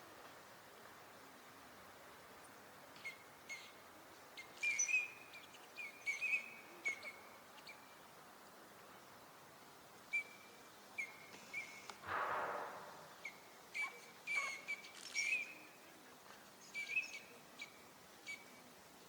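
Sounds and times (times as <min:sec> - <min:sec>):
duck high whistled calls: 0:13.2 - 0:15.5.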